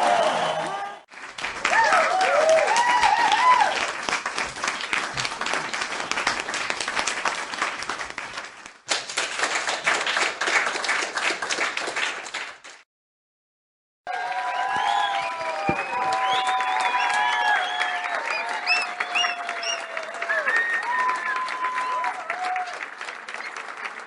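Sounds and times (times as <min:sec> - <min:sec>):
crowd cheering: 0:00.0 - 0:07.8, 0:14.1 - 0:24.0
crowd applauding: 0:00.0 - 0:12.8, 0:14.1 - 0:24.0.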